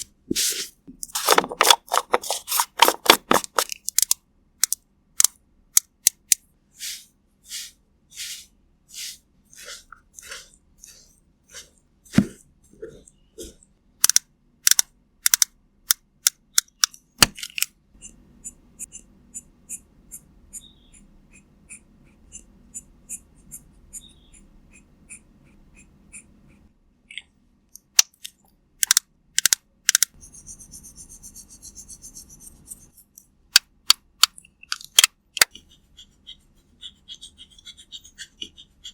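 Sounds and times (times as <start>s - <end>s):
soft brush strokes: 0.0s - 1.4s, 6.8s - 13.6s.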